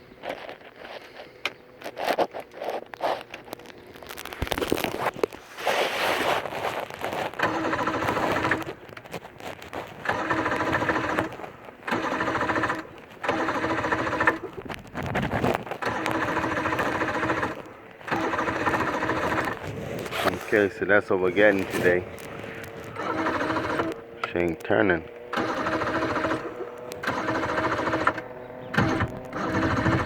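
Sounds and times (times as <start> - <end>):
electric starter whirring: 0.1 - 30.0
person talking: 20.2 - 22.1, 24.2 - 25.1.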